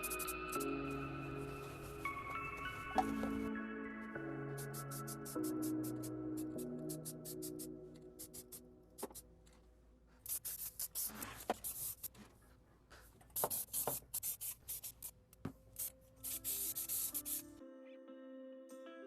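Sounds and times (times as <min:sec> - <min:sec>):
aerosol can spraying: 0:00.0 - 0:01.0, 0:04.6 - 0:09.2, 0:10.2 - 0:12.2, 0:13.4 - 0:15.1, 0:15.8 - 0:17.4
quiet background music: 0:00.0 - 0:10.0, 0:15.4 - 0:19.0.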